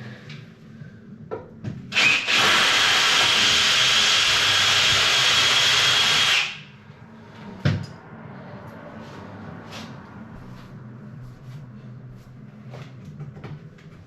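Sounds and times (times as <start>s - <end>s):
power drill boring into wall: 1.9s - 6.6s.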